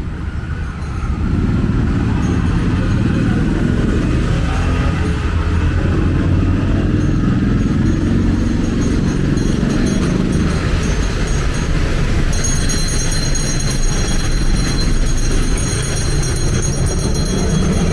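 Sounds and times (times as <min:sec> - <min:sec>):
high jingling tones: 0:00.0 - 0:17.9
vehicle engine droning: 0:00.0 - 0:17.9.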